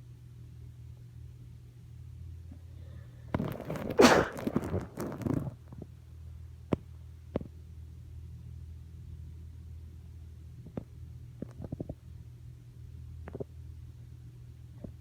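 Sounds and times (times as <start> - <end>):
wet sniffling: 3.6 - 4.9
person sneezing: 3.7 - 4.8.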